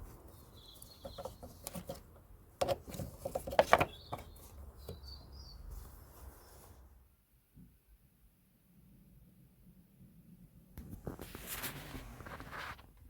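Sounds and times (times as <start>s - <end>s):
faint bird chirps: 3.9s - 6.7s.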